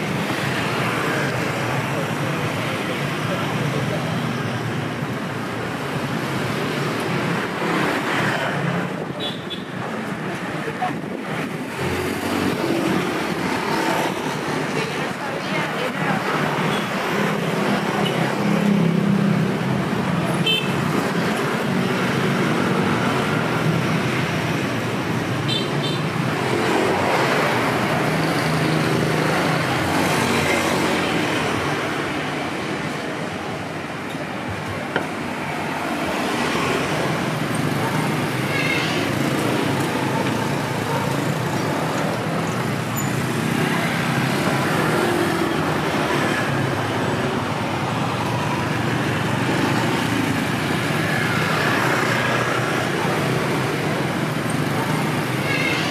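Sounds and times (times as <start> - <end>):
street traffic: 0.0 - 55.9.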